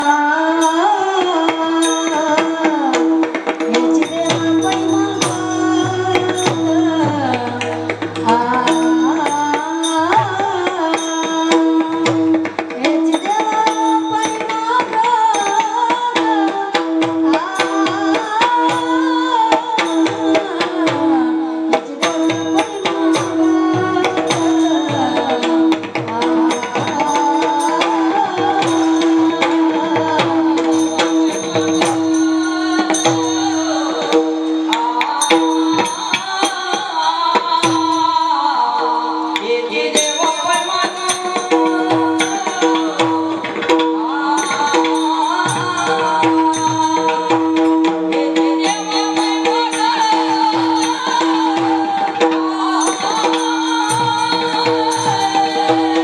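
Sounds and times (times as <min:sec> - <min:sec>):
hand drum strokes: 0:02.7 - 0:19.2
bending melody: 0:03.6 - 0:13.0
drone note: 0:04.2 - 0:11.1.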